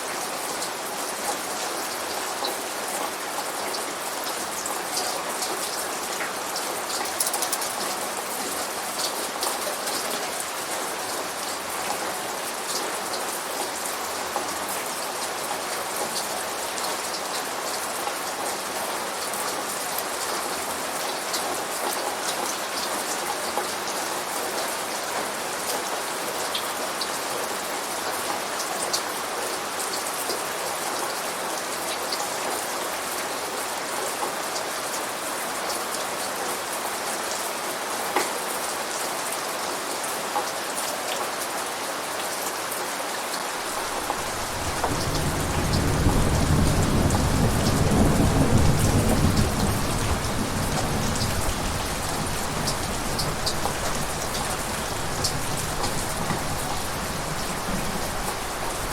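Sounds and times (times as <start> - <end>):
steady rain: 0.0 - 58.9
sharp raindrops: 0.1 - 58.9
rolling thunder: 43.7 - 58.9.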